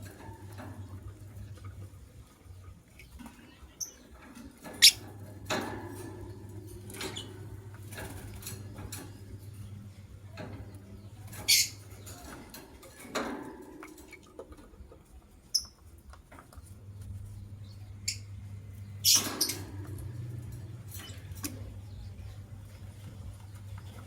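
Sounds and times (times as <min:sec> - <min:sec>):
lovebirds chirping: 0:02.4 - 0:05.1.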